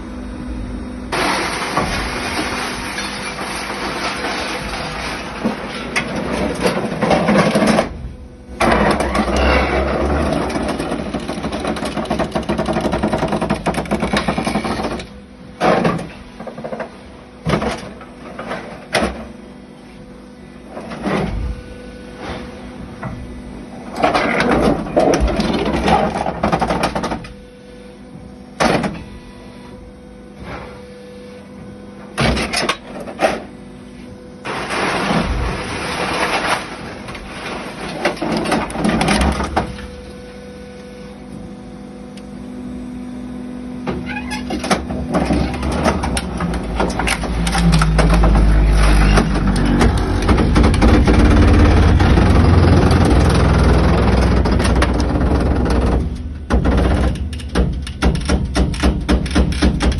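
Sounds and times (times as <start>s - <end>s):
hydraulic hum: 0.0s - 59.9s
loud grinding and crashing: 1.1s - 15.1s, 34.4s - 39.4s, 45.1s - 58.5s
sharp bangs and knocks: 46.8s - 59.9s.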